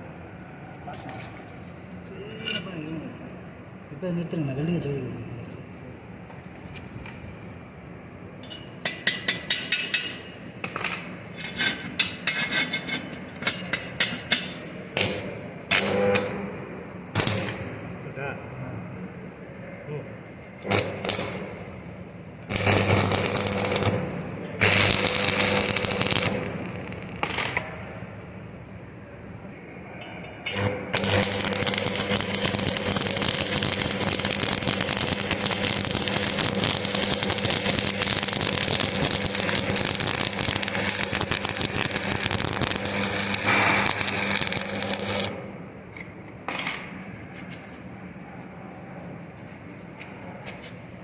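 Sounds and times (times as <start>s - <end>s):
electric arc crackling: 17.2s - 17.7s, 20.6s - 21.6s, 22.4s - 27.8s, 30.5s - 45.5s.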